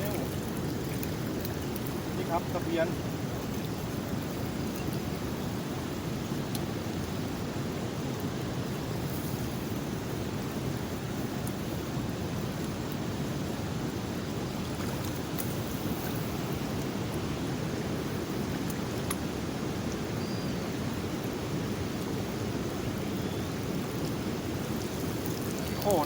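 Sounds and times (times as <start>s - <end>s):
faint clicks: 6.5s - 6.7s.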